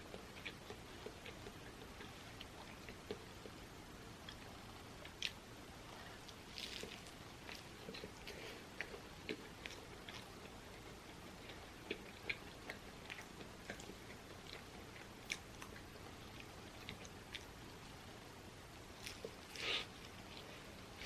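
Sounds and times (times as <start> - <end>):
person chewing food: 0.0 - 17.6, 19.0 - 21.0.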